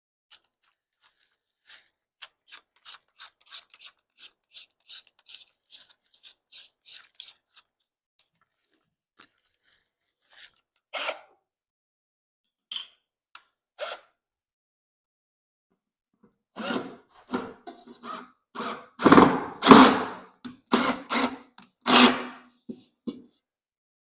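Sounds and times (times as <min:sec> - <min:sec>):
screw scraping into wood: 0:16.6 - 0:23.2.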